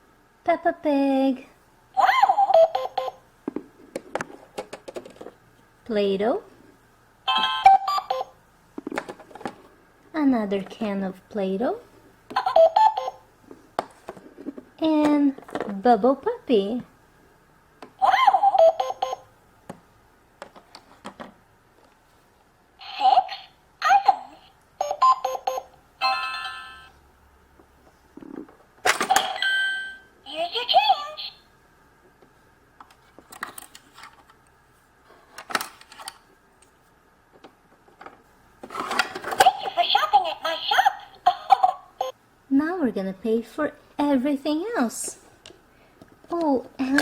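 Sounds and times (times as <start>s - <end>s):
toy cash register beeping: 2.4s - 3.2s, 7.3s - 8.4s, 12.4s - 13.2s, 18.2s - 19.3s, 24.8s - 26.9s, 29.1s - 30.1s.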